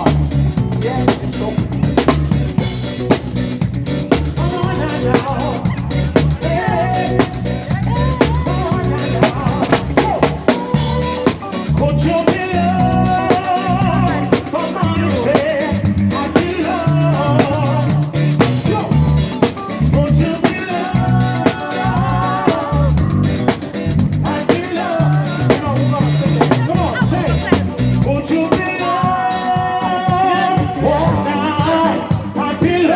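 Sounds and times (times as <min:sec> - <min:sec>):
live band playing upbeat song: 0:00.0 - 0:32.9.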